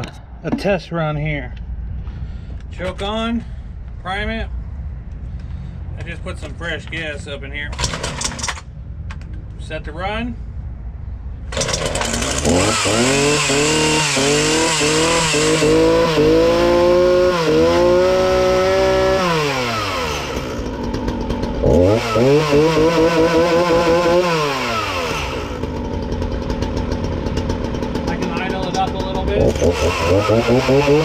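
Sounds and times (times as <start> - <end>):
chainsaw engine revving: 11.5 - 31.0.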